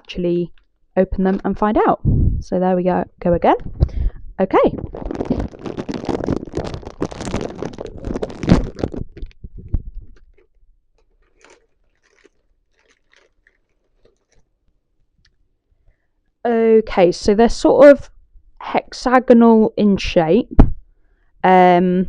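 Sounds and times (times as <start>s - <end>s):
plastic packet crinkling: 4.5s - 14.6s
crackers crunching: 4.6s - 15.4s.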